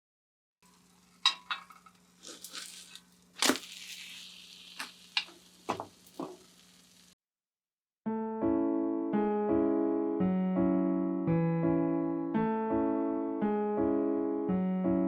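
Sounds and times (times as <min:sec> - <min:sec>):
crisp cracking crunches: 0:02.2 - 0:04.2
short hiss: 0:02.2 - 0:07.2.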